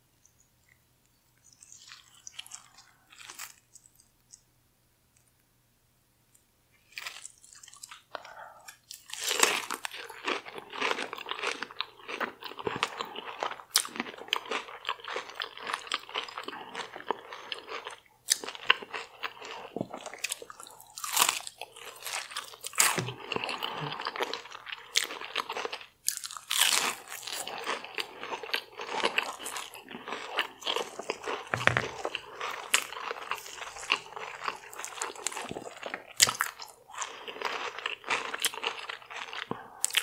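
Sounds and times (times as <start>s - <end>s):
crunchy chewing: 1.4s - 4.4s, 6.9s - 40.0s
soft mouth sounds: 19.2s - 25.0s.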